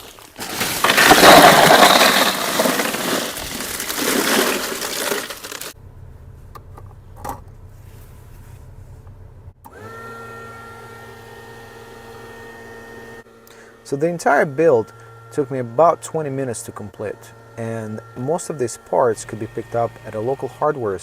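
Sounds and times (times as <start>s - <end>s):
ice pouring into plastic cooler: 0.0s - 5.8s
steady tonal hum: 10.5s - 21.0s.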